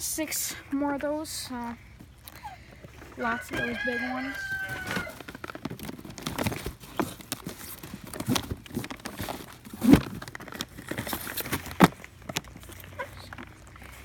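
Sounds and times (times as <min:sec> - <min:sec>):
cardboard boxes rustling and scraping: 0:01.0 - 0:14.0
boxes thumping down: 0:03.2 - 0:12.0.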